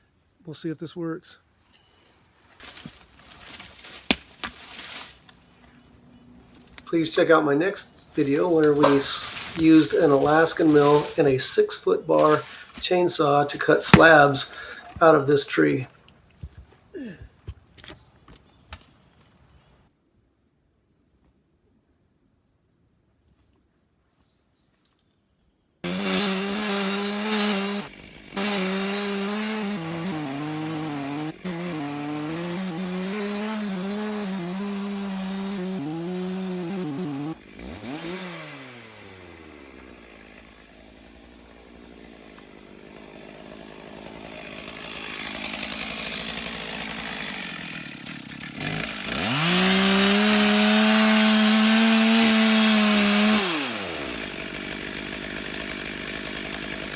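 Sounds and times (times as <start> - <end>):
chainsaw cutting log: 2.7 - 5.4, 6.6 - 15.8, 25.8 - 56.9
chainsaw idling: 6.4 - 15.8, 25.8 - 56.9.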